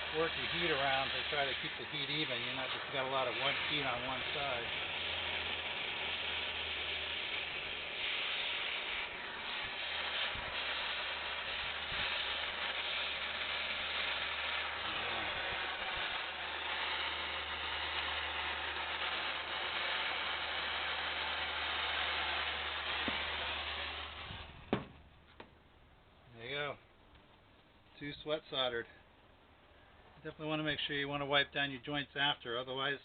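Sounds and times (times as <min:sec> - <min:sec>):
gas torch hissing: 0:00.0 - 0:25.0.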